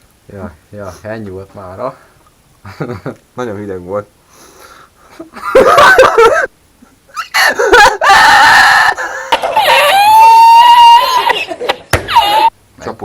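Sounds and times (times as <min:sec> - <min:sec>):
young men shouting and screaming: 0:07.2 - 0:12.6.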